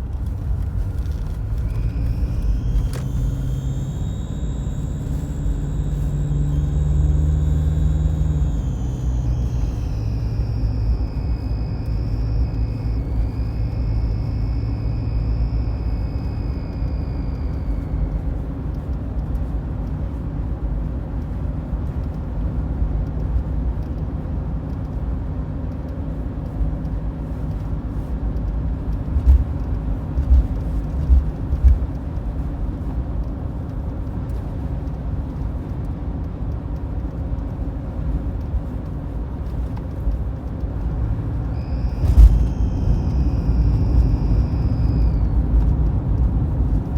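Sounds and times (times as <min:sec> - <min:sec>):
high engine whistle: 0:00.0 - 0:19.5, 0:40.8 - 0:46.9
diesel engine rumble: 0:00.0 - 0:46.9.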